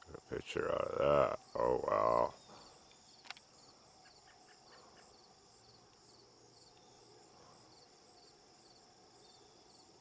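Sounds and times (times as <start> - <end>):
insects chirring: 0.0 - 4.4.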